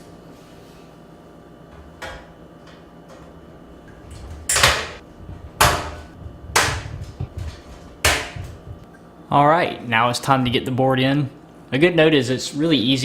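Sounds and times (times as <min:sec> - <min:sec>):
sheet metal snapping into place: 0:04.5 - 0:05.0.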